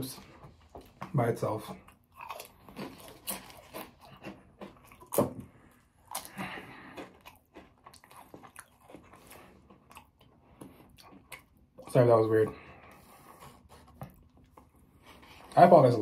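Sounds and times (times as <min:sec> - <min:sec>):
chewing potato chips: 0:00.1 - 0:12.1.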